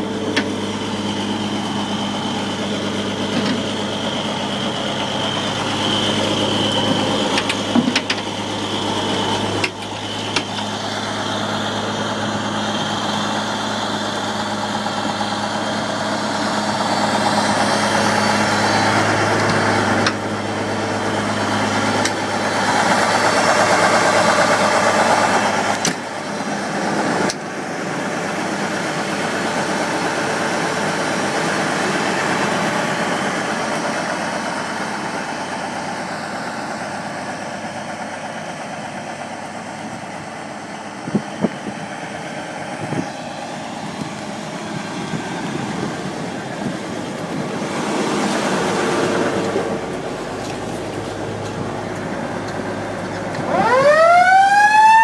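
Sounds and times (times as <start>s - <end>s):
fire truck engine idling: 0.0s - 55.0s
sharp clicks and knocks: 6.8s - 8.3s.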